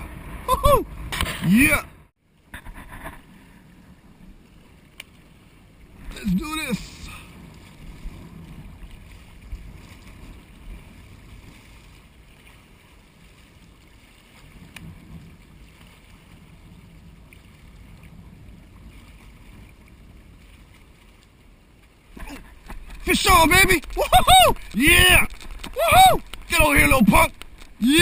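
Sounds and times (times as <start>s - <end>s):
wind buffeting microphone: 5.7s - 21.1s, 22.1s - 28.0s.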